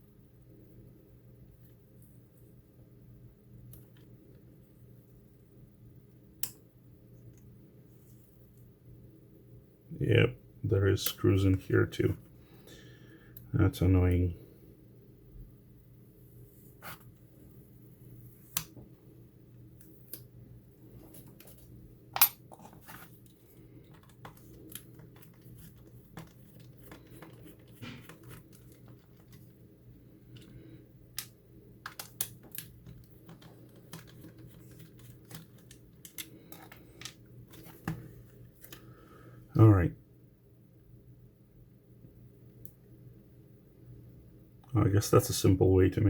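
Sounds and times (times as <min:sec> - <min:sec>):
faint low hum: 0:00.0 - 0:46.0
plastic parts being handled: 0:20.8 - 0:38.9.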